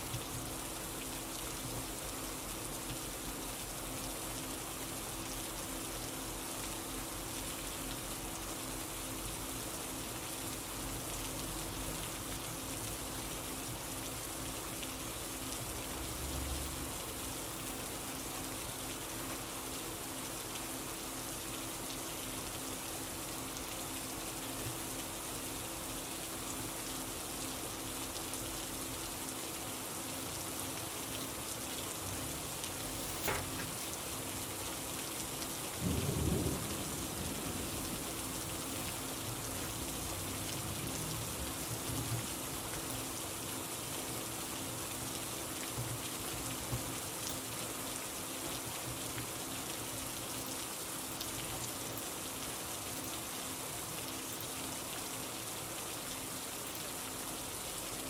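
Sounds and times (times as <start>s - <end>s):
steady rain: 0.0s - 58.0s
low rumble of thunder: 35.7s - 42.8s.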